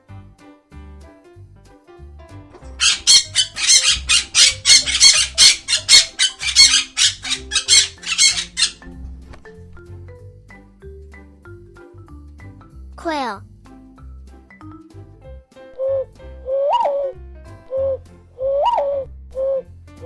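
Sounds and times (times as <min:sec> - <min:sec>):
soft background music: 0:00.0 - 0:20.0
parrot squawking: 0:02.8 - 0:08.8.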